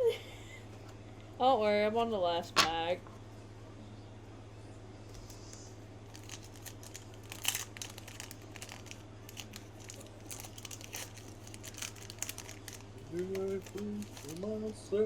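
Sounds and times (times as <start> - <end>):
foil wrapper crinkling and tearing: 6.1 - 14.8.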